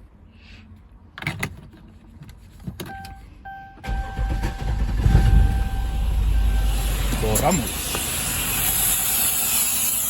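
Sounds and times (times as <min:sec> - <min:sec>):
electronic warning tone: 0:03.5 - 0:07.8
car engine misfiring: 0:03.8 - 0:09.1.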